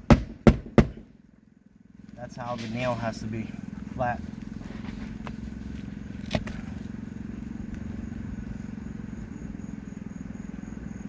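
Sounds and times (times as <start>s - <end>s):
sharp knock: 0.0s - 1.1s
low engine-like hum: 0.0s - 11.0s.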